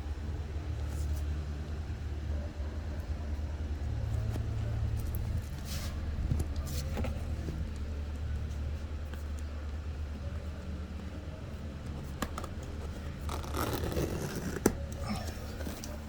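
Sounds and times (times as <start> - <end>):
low rumbling hum: 0.0 - 16.0
fabric and velcro scraping: 13.2 - 14.8.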